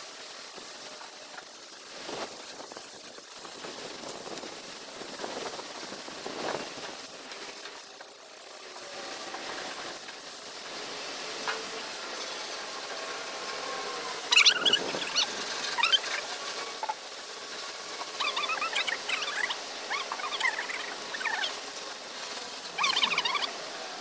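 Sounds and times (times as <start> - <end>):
high squeaks: 13.7 - 17.0, 18.0 - 21.6, 22.6 - 23.6.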